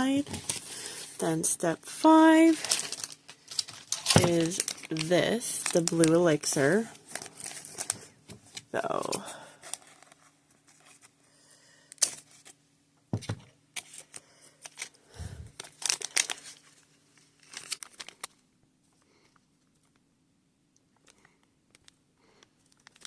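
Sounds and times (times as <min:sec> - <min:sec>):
plastic packet crinkling: 0:00.0 - 0:11.1, 0:13.8 - 0:18.4, 0:21.0 - 0:23.0
faint steady hum: 0:00.0 - 0:23.0.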